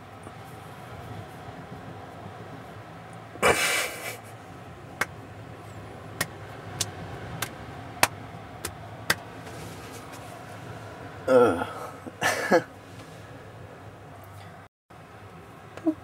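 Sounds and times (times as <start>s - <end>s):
car rumbling on road: 0.0s - 16.0s
short rustling burst: 9.4s - 10.6s.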